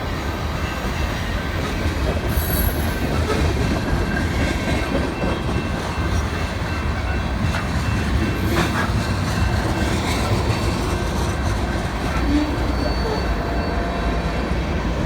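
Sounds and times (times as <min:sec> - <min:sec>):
train wheels rumbling on rail: 0:00.0 - 0:15.0
high tones from wheels: 0:10.9 - 0:14.4.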